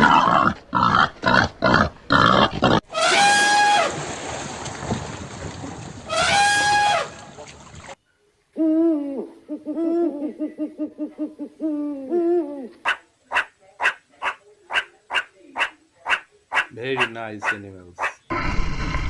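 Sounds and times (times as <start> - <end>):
short sharp calls: 6.0 - 7.9.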